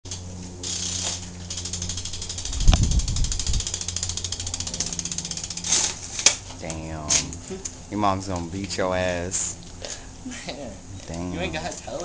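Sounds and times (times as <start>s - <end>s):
bike freewheel clicking: 0.1s - 7.8s.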